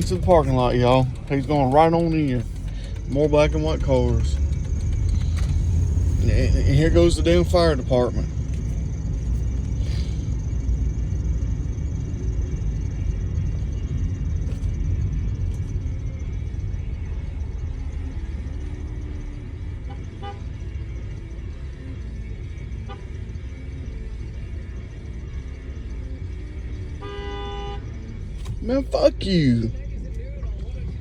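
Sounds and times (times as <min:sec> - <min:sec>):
car engine and road noise: 0:00.0 - 0:31.0.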